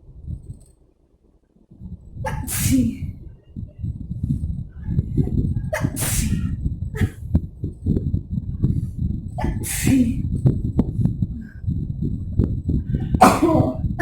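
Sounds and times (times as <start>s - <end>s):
low rumble: 0.0s - 14.0s
person sneezing: 2.3s - 3.1s, 5.7s - 7.2s, 9.4s - 10.2s, 13.2s - 13.8s.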